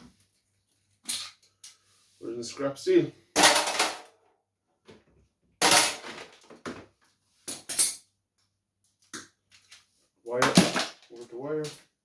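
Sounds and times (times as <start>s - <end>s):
scrap metal parts clattering: 3.4s - 4.1s, 5.6s - 6.5s.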